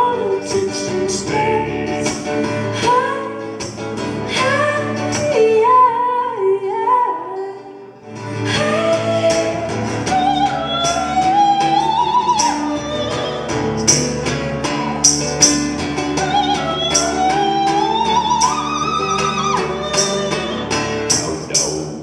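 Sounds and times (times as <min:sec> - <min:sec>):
woman singing with vibrato: 0:00.0 - 0:14.3, 0:16.0 - 0:21.0
instrumental accompaniment: 0:08.0 - 0:22.0
sharp percussive hits: 0:13.7 - 0:16.2, 0:18.4 - 0:22.0.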